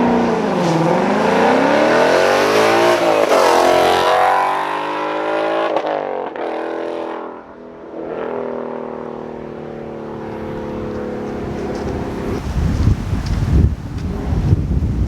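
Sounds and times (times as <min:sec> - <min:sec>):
car exhaust accelerating: 0:08.0 - 0:13.4
wind on microphone: 0:10.4 - 0:15.0.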